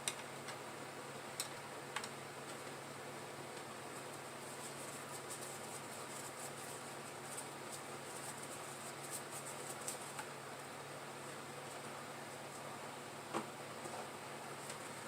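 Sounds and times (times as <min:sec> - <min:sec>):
light ticks and scratches: 0:03.5 - 0:10.7.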